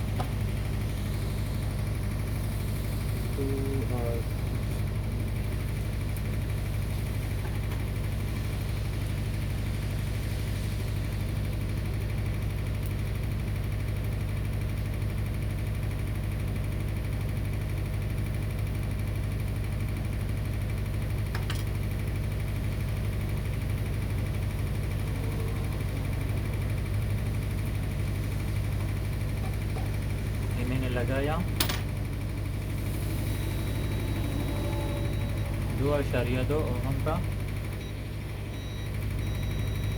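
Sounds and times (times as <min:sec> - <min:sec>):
steady low hum: 0:22.0 - 0:39.9.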